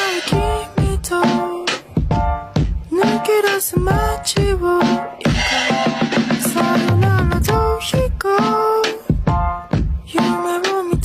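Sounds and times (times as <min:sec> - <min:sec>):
pop song with a beat: 0:00.0 - 0:11.0
low drum thumps: 0:00.3 - 0:08.5, 0:09.1 - 0:10.2.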